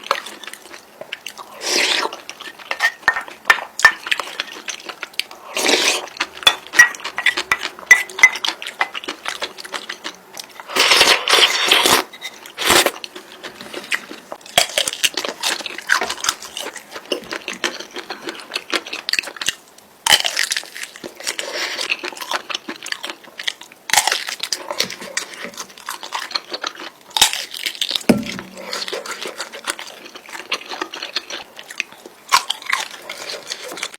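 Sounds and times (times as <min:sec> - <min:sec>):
chewing noodles: 0:00.0 - 0:33.9.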